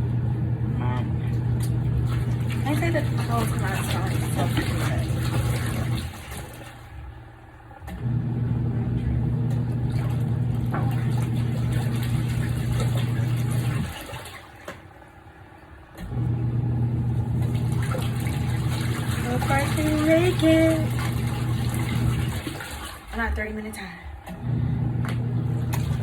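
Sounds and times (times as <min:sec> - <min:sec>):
washing machine motor humming: 0:00.0 - 0:26.0.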